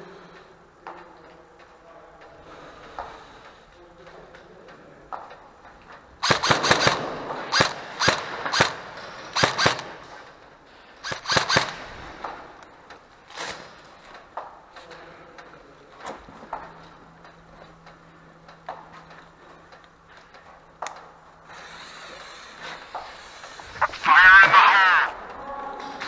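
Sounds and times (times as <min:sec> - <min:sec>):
airsoft guns firing: 0:06.2 - 0:10.4, 0:11.0 - 0:12.6, 0:23.7 - 0:25.2.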